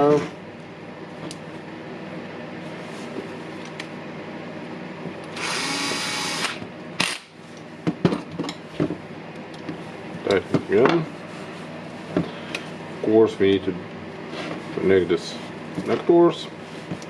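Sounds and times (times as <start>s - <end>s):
electric screwdriver running: 5.4s - 7.3s.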